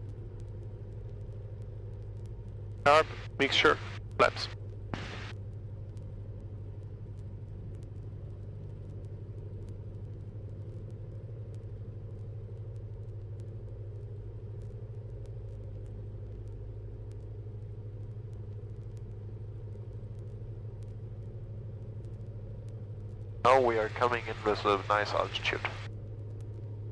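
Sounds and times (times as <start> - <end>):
airplane engine and propeller droning: 0.0 - 26.9.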